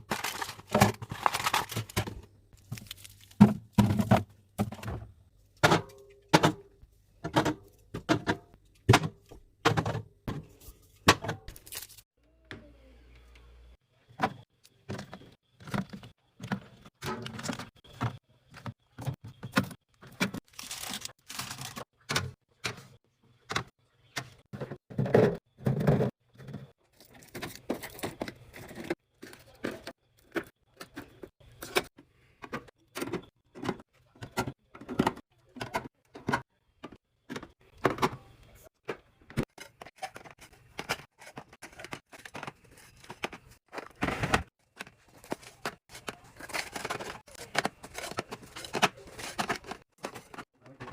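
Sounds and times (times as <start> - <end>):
snack packets rustling and knocking: 0.0 - 5.0, 39.4 - 50.9.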